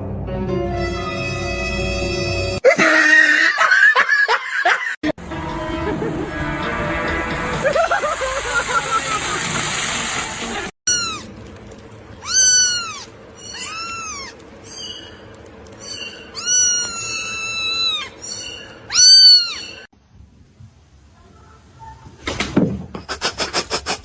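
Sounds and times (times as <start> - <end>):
cat meowing: 10.9 - 11.3, 12.2 - 14.4, 16.3 - 19.9.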